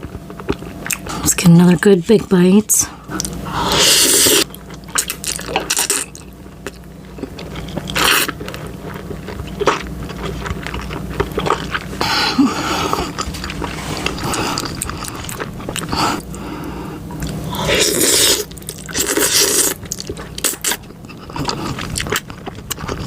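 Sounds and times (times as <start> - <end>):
chewing and biting food: 0.0 - 1.2, 4.2 - 16.4, 17.2 - 23.0.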